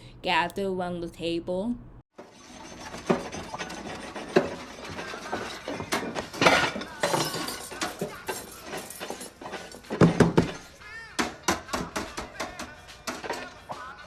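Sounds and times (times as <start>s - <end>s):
plates and cutlery clinking: 2.2s - 14.0s
background din: 2.7s - 13.8s.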